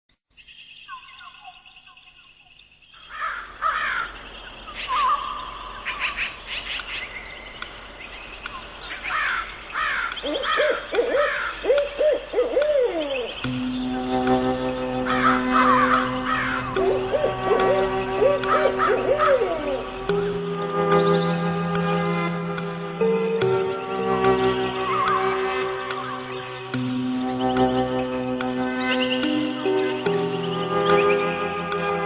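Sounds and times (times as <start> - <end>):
owl high falling calls: 0.8 - 7.1, 9.0 - 14.0, 15.0 - 20.1
owl low hoots: 10.3 - 13.3, 16.4 - 19.9.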